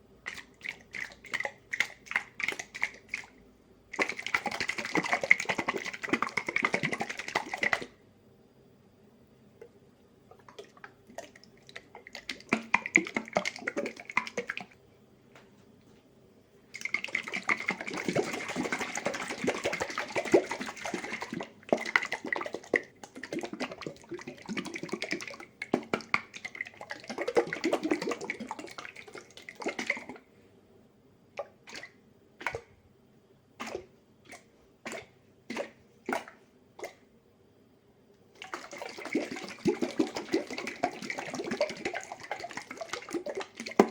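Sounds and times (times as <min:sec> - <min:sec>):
sauce sloshing in shaken glass jar: 0:04.0 - 0:07.9, 0:16.7 - 0:30.2, 0:38.4 - 0:43.9.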